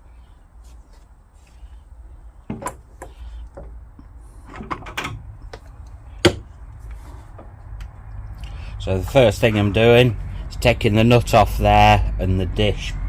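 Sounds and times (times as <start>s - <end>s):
tools knocking and clattering: 2.5s - 3.8s.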